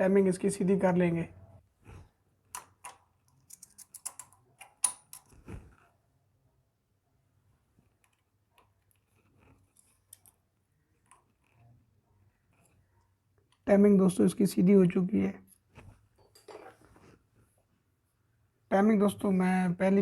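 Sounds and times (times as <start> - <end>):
metallic tool clicks: 2.5 - 5.3.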